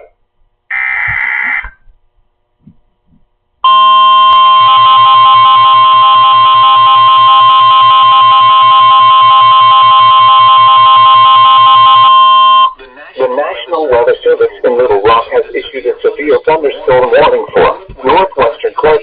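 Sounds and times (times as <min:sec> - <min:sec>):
loud steady electronic tone: 0:00.7 - 0:01.9, 0:03.6 - 0:12.8.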